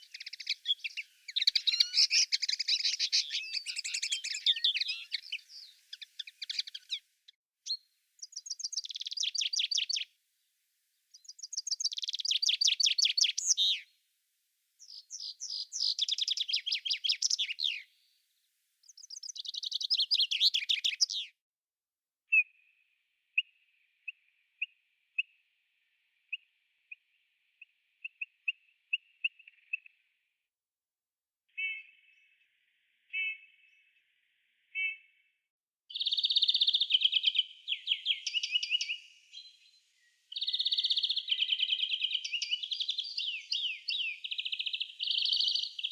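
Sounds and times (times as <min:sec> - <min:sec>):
bird high chirps: 0:00.0 - 0:07.1, 0:07.7 - 0:10.1, 0:11.1 - 0:13.9, 0:14.8 - 0:17.9, 0:18.8 - 0:21.3, 0:27.6 - 0:30.0, 0:31.5 - 0:32.3, 0:33.1 - 0:33.8, 0:34.7 - 0:35.1, 0:35.9 - 0:45.9
songbird trilled song: 0:00.0 - 0:07.1, 0:07.7 - 0:10.1, 0:11.1 - 0:13.9, 0:14.8 - 0:18.0, 0:18.8 - 0:21.3, 0:26.2 - 0:30.1, 0:35.9 - 0:45.9.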